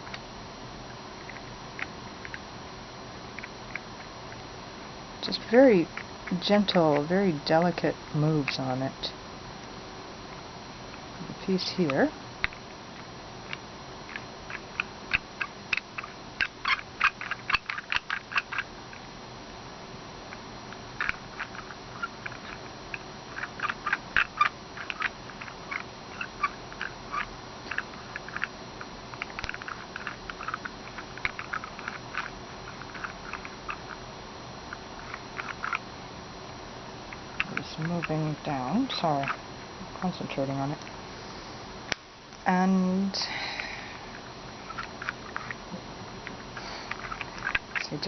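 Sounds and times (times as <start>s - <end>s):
wooden puzzle clicks: 13.5s - 18.6s, 21.0s - 28.5s, 29.2s - 33.9s, 35.0s - 35.8s, 44.7s - 45.6s, 46.3s - 48.0s.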